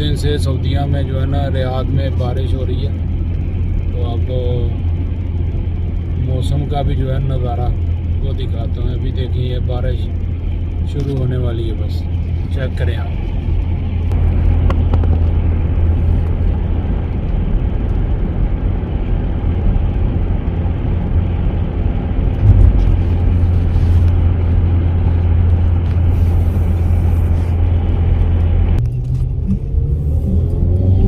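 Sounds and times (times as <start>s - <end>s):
car engine and road drone: 0.0s - 31.0s.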